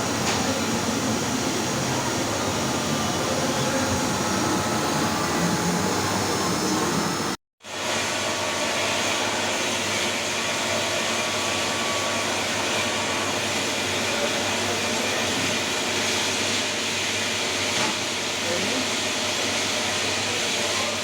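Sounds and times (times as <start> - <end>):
machinery whirring and hissing: 0.0 - 16.8.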